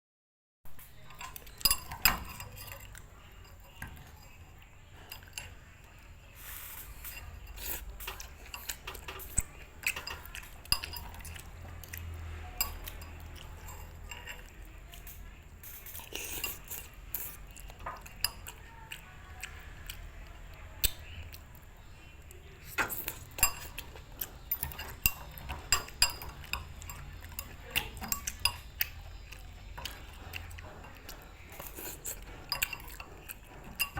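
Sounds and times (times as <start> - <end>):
metal utensils clinking on dishes: 0.8 - 18.8, 22.4 - 33.9.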